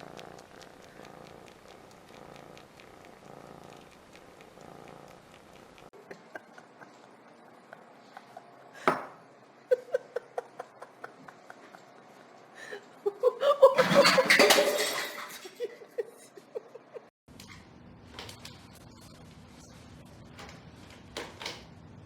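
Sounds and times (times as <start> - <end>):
hard objects clattering: 13.8 - 15.6.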